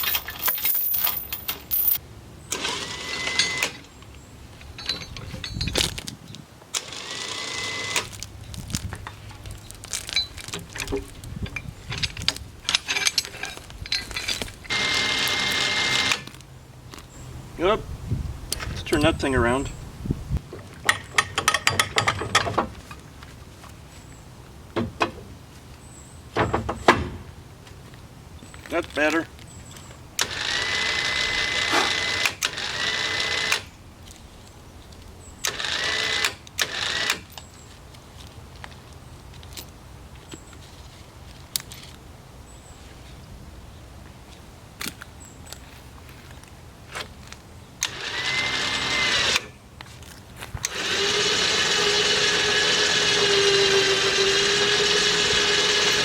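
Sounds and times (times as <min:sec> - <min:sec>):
chain rattling: 0:00.0 - 0:02.0, 0:04.6 - 0:06.0, 0:08.2 - 0:15.0
metal clanks: 0:00.0 - 0:02.0, 0:04.6 - 0:06.0, 0:20.8 - 0:23.0
winch whining: 0:00.0 - 0:03.9, 0:11.9 - 0:16.4, 0:30.2 - 0:33.7, 0:47.8 - 0:49.5, 0:50.6 - 0:56.0.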